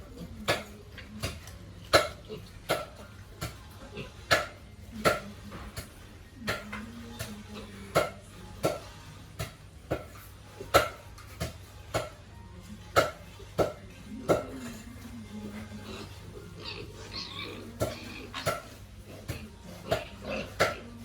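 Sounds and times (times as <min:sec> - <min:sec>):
pigs grunting: 0:00.0 - 0:06.0, 0:14.1 - 0:21.0.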